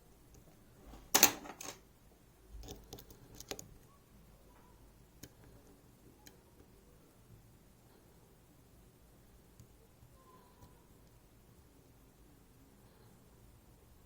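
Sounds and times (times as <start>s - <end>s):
lock-picking tools clicking: 1.1s - 1.8s.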